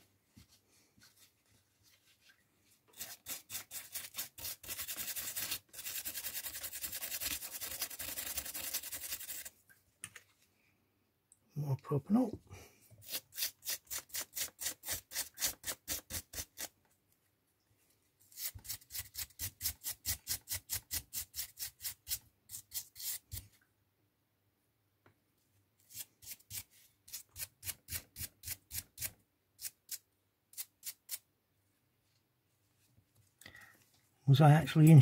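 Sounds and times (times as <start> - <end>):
bristle brush scrubbing: 2.9 - 9.5.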